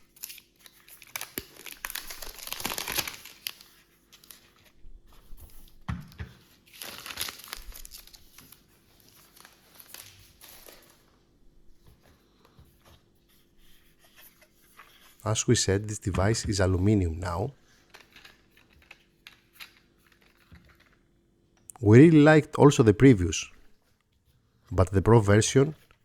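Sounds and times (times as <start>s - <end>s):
plastic wrap crinkling and tearing: 0.0s - 4.8s, 6.4s - 11.1s.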